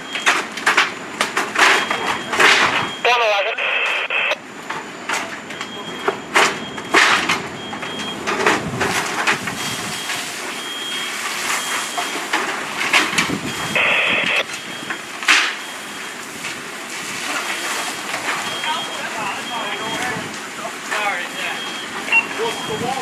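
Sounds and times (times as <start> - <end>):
faint high beeping: 13.7 - 14.9, 18.4 - 20.3, 21.1 - 23.0.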